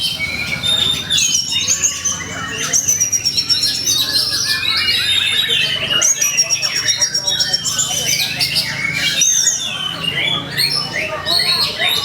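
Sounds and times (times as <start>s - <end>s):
bird singing whistles and trills: 0.0s - 12.0s.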